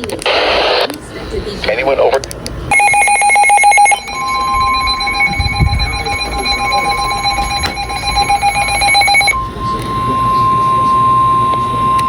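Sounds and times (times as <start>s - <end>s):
rapid electronic beeping: 2.7s - 12.0s
steady high alarm tone: 2.7s - 12.0s.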